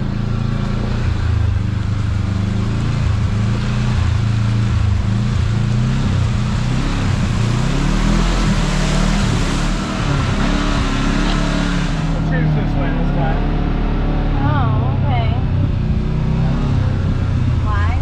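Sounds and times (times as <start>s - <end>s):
off-road vehicle engine revving: 0.0s - 18.0s.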